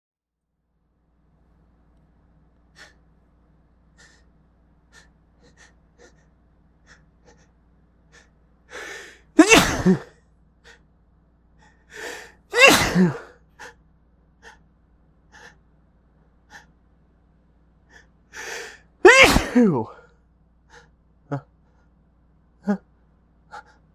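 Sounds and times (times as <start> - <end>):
low steady hum: 0.6 - 23.9
sharp in-breath: 8.1 - 9.6, 17.9 - 19.6
person sneezing: 8.8 - 10.1, 12.0 - 13.8, 18.4 - 20.0.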